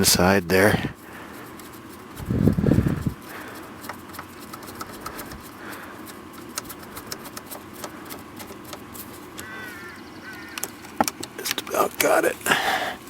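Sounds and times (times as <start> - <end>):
screwdriver clicking on screw: 3.8 - 8.8.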